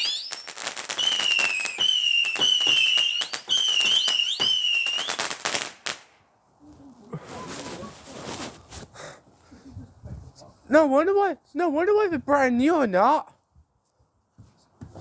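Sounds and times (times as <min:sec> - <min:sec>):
firework whistle: 0:00.0 - 0:05.3
fireworks crackling and popping: 0:00.0 - 0:09.0.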